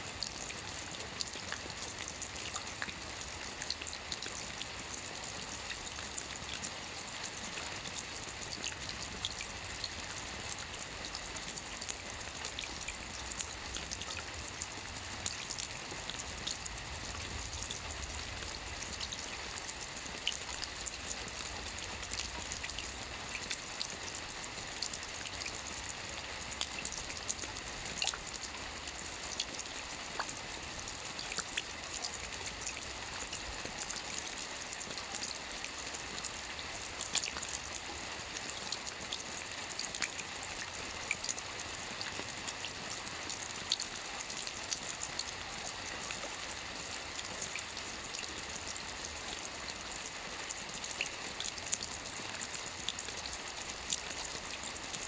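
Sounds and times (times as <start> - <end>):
raindrops ticking on a surface: 0.0 - 55.0
steady rain hiss: 0.0 - 55.0.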